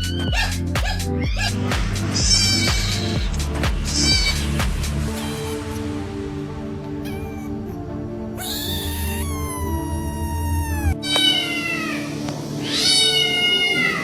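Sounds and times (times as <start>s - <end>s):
cat meowing: 0.0s - 1.5s, 2.2s - 3.2s, 4.0s - 4.5s, 7.0s - 7.8s, 8.4s - 14.0s
background music: 0.0s - 14.0s.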